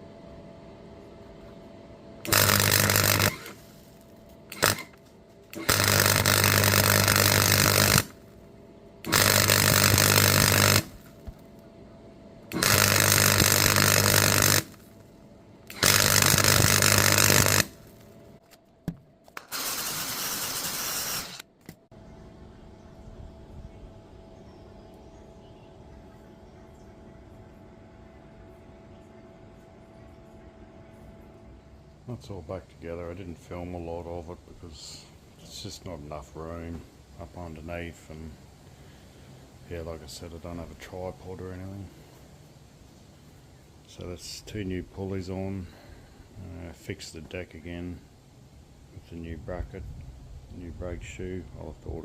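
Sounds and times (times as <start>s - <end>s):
steady electrical hum: 0.0s - 52.0s
electric arc welding noise: 2.2s - 11.6s, 12.5s - 18.2s, 19.4s - 21.8s.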